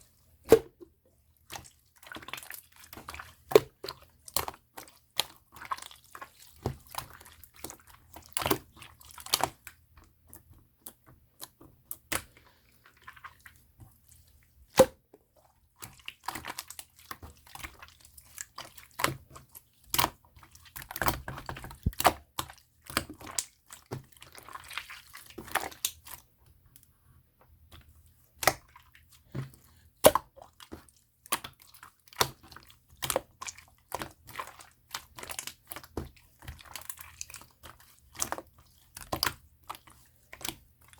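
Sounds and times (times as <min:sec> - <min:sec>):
slime squished by hand: 0:15.9 - 0:26.2, 0:28.4 - 0:40.6.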